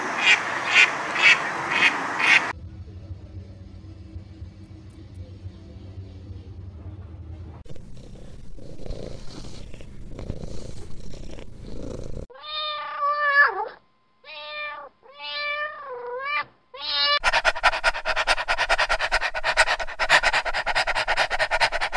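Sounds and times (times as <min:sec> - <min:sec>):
cat purring: 0:07.6 - 0:12.3, 0:17.2 - 0:21.9
cat meowing: 0:12.3 - 0:17.2.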